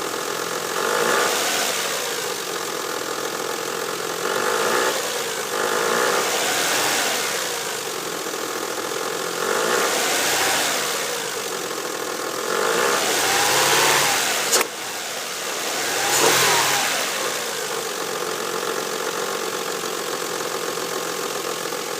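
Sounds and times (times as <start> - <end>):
car engine revving and idling: 0.0 - 21.9
engine noise at idle: 0.0 - 21.9
sharp click: 14.5 - 14.8.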